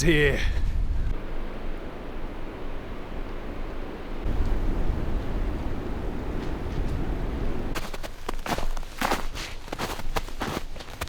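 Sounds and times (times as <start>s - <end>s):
wind buffeting microphone: 0.0s - 7.8s.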